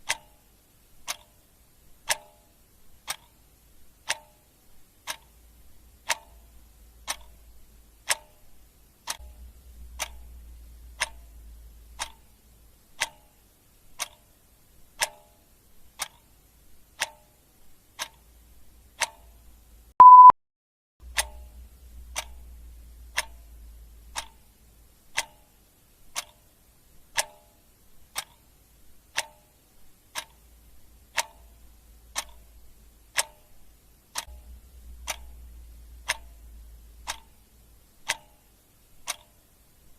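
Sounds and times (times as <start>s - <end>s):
clock ticking: 0.0s - 20.3s, 21.0s - 39.9s
short high beep: 20.0s - 20.4s.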